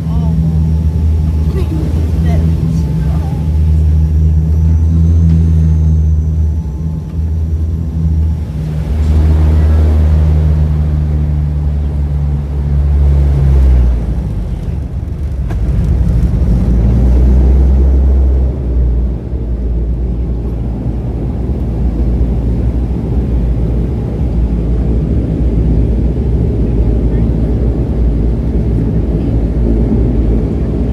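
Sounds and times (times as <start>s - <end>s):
turboprop engines droning: 0.0s - 30.9s
wind: 0.0s - 30.9s.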